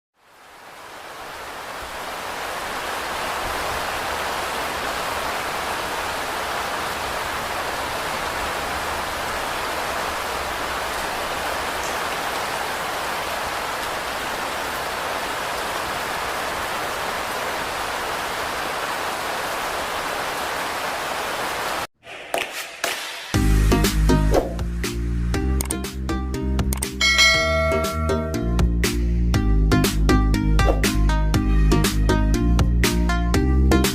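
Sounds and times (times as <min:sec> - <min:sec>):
heavy rain: 0:00.2 - 0:21.9.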